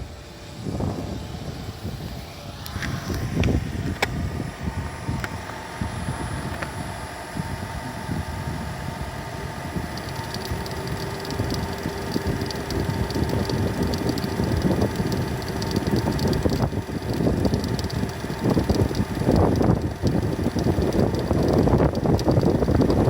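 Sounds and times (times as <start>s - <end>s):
engine mechanical hum: 0.0s - 23.0s
whining tones: 0.0s - 23.0s
faint rapid high crackle: 9.8s - 23.0s.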